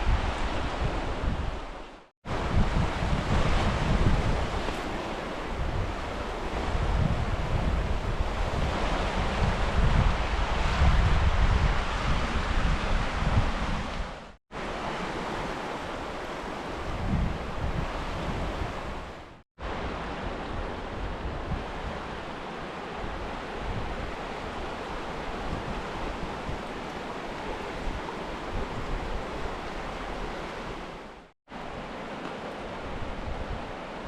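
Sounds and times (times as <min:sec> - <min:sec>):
wind on microphone: 0:00.0 - 0:32.0, 0:32.6 - 0:34.0
river water rushing: 0:13.9 - 0:34.0.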